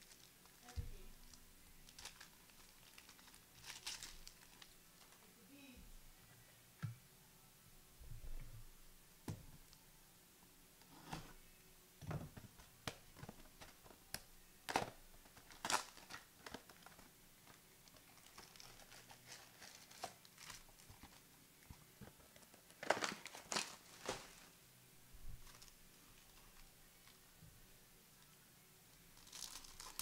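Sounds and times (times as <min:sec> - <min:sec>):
card wrappers crinkling and tearing: 0:00.0 - 0:05.3, 0:12.8 - 0:21.3, 0:22.4 - 0:24.5, 0:25.4 - 0:27.2, 0:29.1 - 0:30.0.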